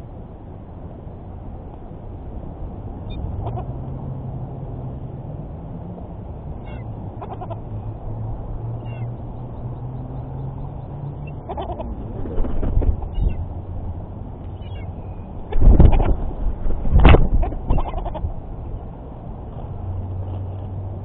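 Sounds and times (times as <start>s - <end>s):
birds calling: 6.6s - 8.0s, 8.8s - 13.5s, 14.5s - 16.1s, 17.4s - 18.2s.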